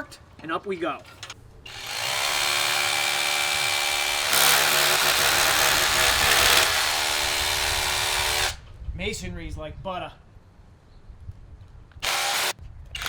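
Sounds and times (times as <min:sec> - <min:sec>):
rotary hammer drilling into masonry: 0:01.7 - 0:08.6, 0:12.0 - 0:13.0.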